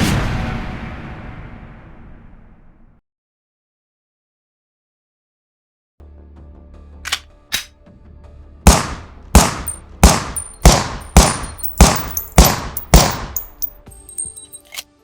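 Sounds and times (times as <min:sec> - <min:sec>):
pistol mechanical clicks: 0:07.1 - 0:07.7, 0:08.7 - 0:15.0
pistol shots with ringing tail: 0:08.7 - 0:14.6
light metallic clinks: 0:09.6 - 0:15.0.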